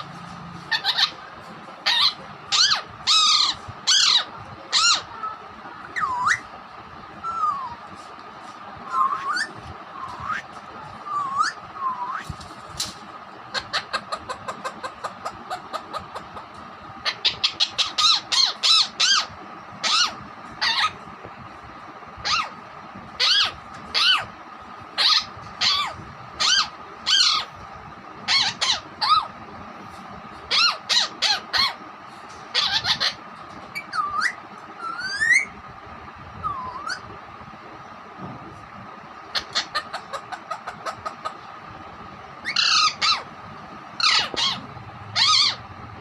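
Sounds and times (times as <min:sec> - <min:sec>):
parakeet calling: 0:00.0 - 0:05.1, 0:05.9 - 0:06.6, 0:13.5 - 0:21.0, 0:22.2 - 0:22.6, 0:23.2 - 0:27.6, 0:28.2 - 0:29.4, 0:30.5 - 0:31.8, 0:32.5 - 0:35.5, 0:36.4 - 0:37.1, 0:39.2 - 0:41.5, 0:42.4 - 0:43.4, 0:44.0 - 0:45.7.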